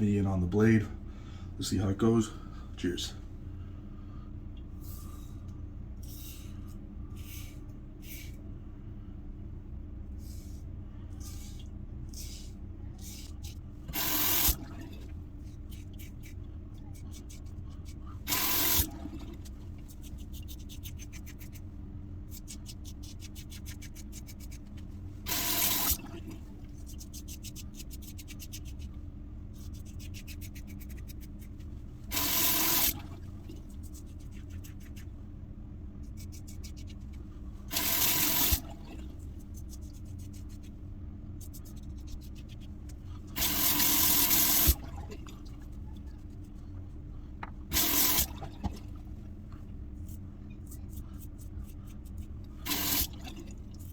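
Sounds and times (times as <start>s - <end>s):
water running from a tap: 14.0s - 15.0s, 18.3s - 19.5s, 25.3s - 26.4s, 32.1s - 33.5s, 37.7s - 39.0s, 43.4s - 45.2s, 47.7s - 48.8s, 52.7s - 53.5s.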